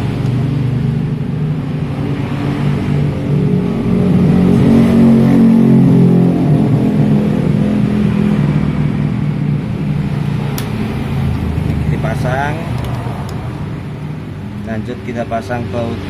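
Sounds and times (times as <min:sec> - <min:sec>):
vehicle engine running: 0:03.7 - 0:15.2.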